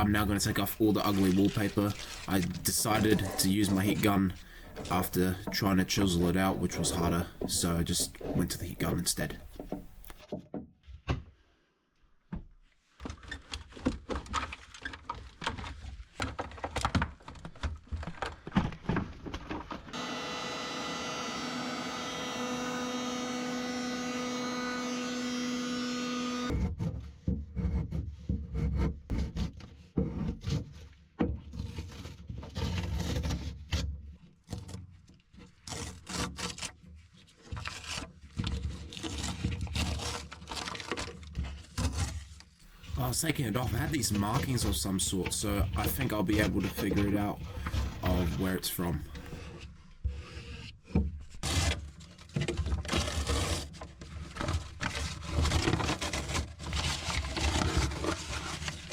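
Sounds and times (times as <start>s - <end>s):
scraper scratching wallpaper: 0.0s - 10.2s, 35.4s - 50.7s, 51.3s - 58.9s
heat gun motor hum: 20.0s - 26.5s.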